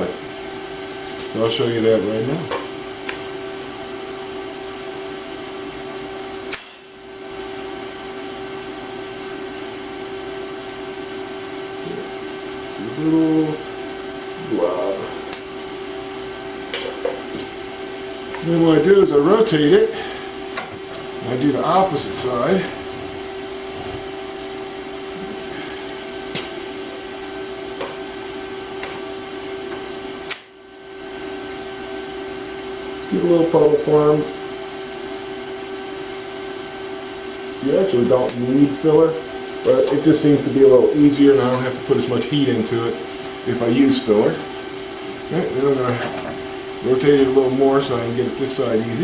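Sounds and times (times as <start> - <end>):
electrical hum and hiss: 0.0 - 49.0
welding arc buzzing: 0.0 - 49.0
sharp click: 30.3 - 30.5.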